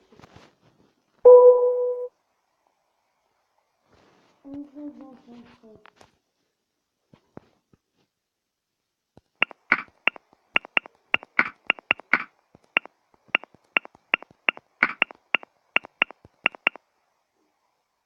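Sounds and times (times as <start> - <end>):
smartphone keyboard tap clicks: 9.4 - 15.1, 15.8 - 16.8.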